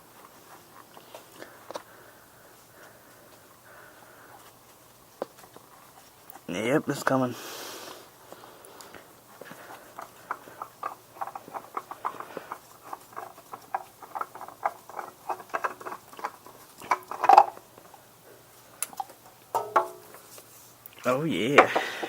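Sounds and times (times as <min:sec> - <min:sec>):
oil dripping: 0:08.2 - 0:22.0.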